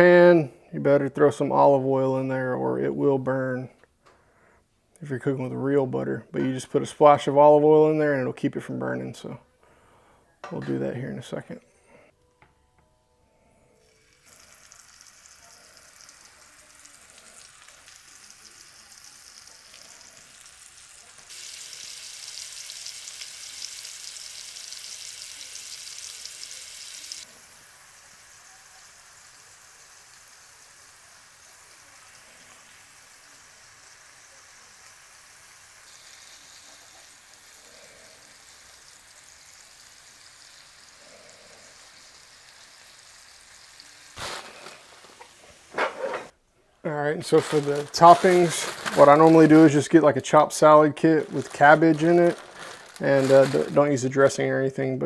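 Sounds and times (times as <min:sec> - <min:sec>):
butter and oil sizzling in a pan: 0:13.8 - 0:46.3, 0:47.3 - 0:49.9, 0:51.0 - 0:54.1.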